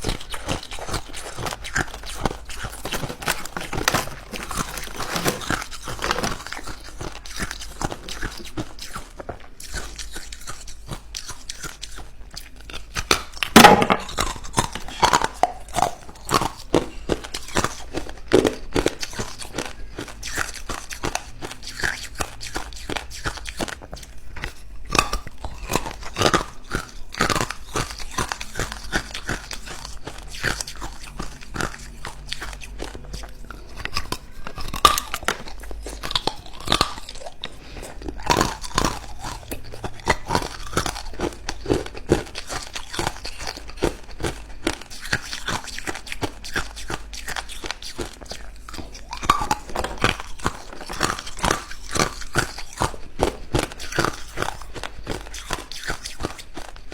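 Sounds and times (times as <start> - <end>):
ice cubes crunching in mouth: 0.0 - 56.9.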